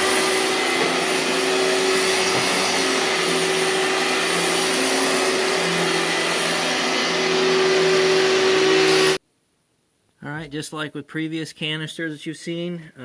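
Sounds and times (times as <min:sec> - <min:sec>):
vacuum cleaner motor whine: 0:00.0 - 0:09.2.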